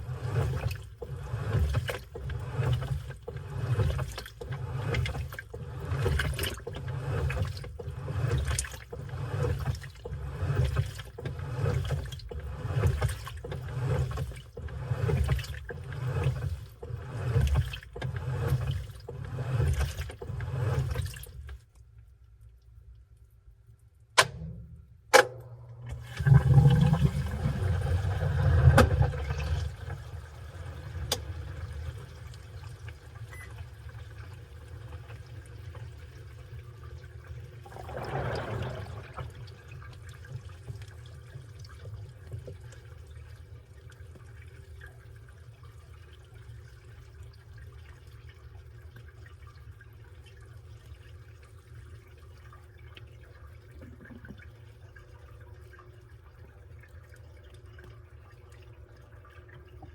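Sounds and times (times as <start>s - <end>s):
water rushing into washing machine: 0.0s - 21.7s, 24.2s - 59.9s
washing machine humming: 0.0s - 22.5s, 23.2s - 59.9s
washing machine clicks: 24.2s - 26.0s
water trickling: 25.9s - 59.9s.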